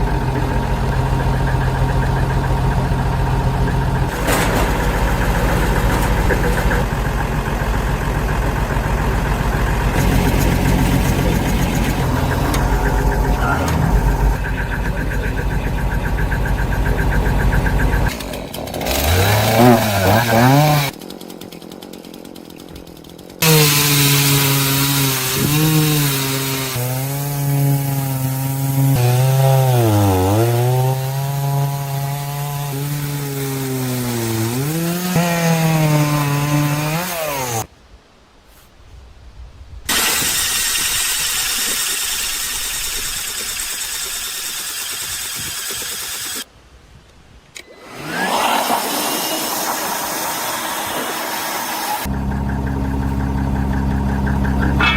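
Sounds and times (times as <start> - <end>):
engine running: 0.0 - 37.7, 39.9 - 46.5, 47.7 - 54.9
power tool whining: 0.0 - 37.7, 39.9 - 46.5, 47.6 - 54.9
steady hiss: 37.8 - 47.4.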